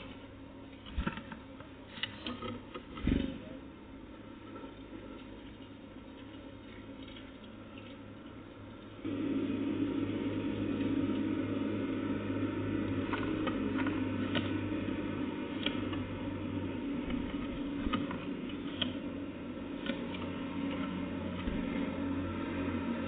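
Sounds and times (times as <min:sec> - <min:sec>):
low mechanical hum: 0:00.0 - 0:23.0.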